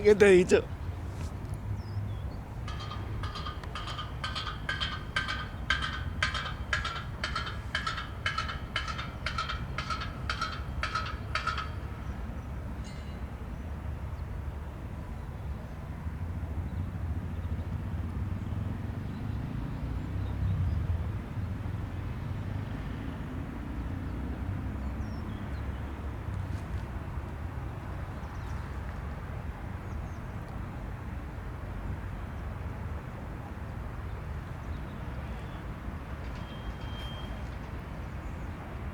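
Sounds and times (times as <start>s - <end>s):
low engine rumble: 0.0s - 12.6s.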